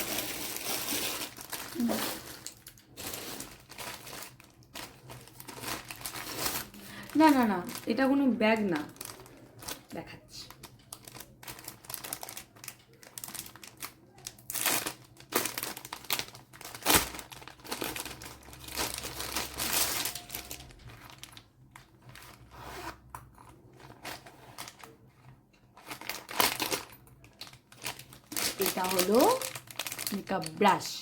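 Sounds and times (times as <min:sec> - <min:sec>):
packaging crinkling: 0:00.0 - 0:31.0.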